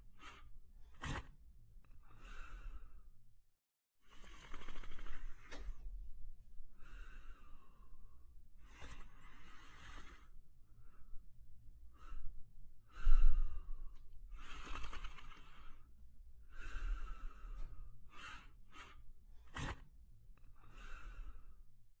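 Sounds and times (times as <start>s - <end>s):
dog breathing and snoring: 0.0s - 2.3s, 4.0s - 5.9s, 8.6s - 10.9s, 12.9s - 15.9s, 16.6s - 21.5s.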